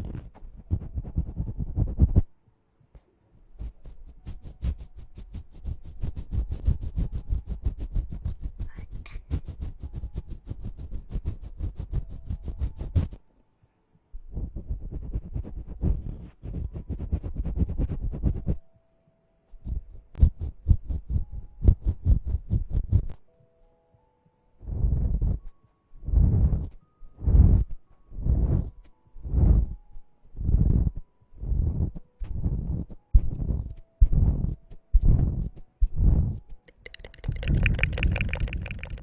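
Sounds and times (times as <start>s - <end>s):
scratching against microphone: 0.0s - 2.3s, 3.6s - 13.2s, 14.3s - 18.6s, 30.4s - 39.0s.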